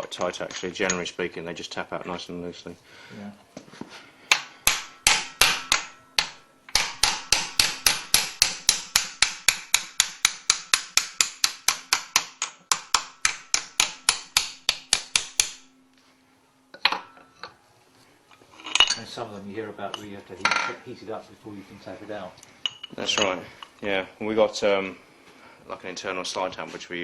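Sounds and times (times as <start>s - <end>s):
hammer tapping metal: 4.3s - 15.7s.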